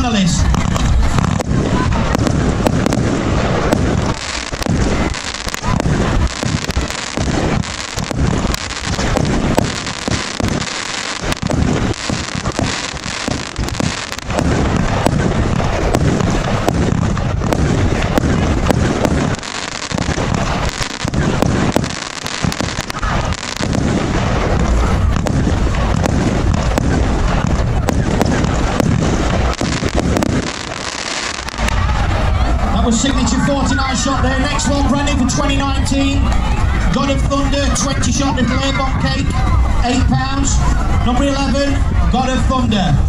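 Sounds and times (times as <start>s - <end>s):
firework cake firing: 0.0s - 42.6s.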